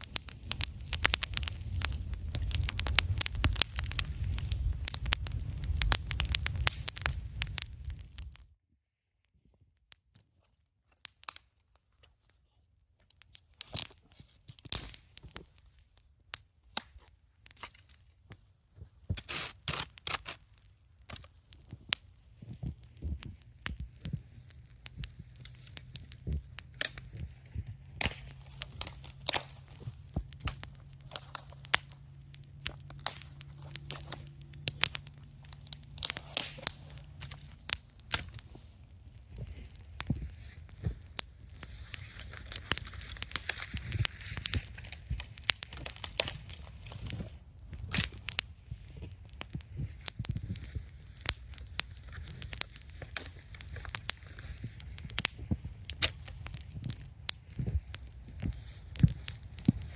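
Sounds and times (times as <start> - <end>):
campfire crackling and popping: 0.0 - 8.5, 11.0 - 12.4, 13.0 - 59.9.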